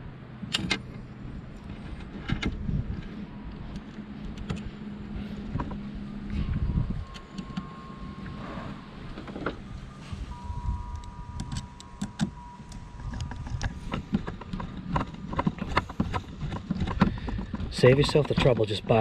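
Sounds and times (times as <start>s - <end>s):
low background rumble: 0.0s - 19.0s
small parts clicking and knocking: 10.7s - 19.0s.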